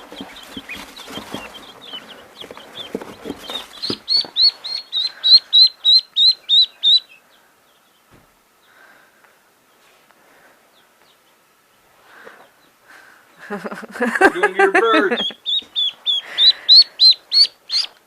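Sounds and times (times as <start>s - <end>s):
handling knocks: 0.0s - 4.4s
faint rustling: 0.0s - 5.5s
chick loud falling peeps: 0.0s - 7.2s, 13.3s - 18.0s
chicks peeping: 0.0s - 18.0s.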